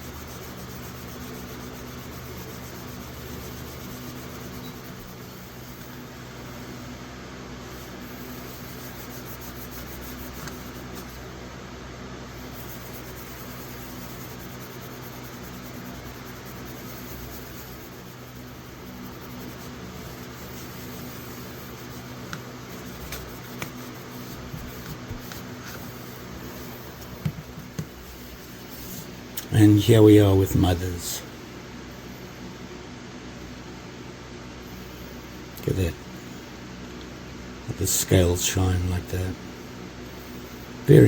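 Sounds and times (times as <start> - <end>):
electric fan humming: 0.0 - 41.0
light taps: 27.0 - 28.0.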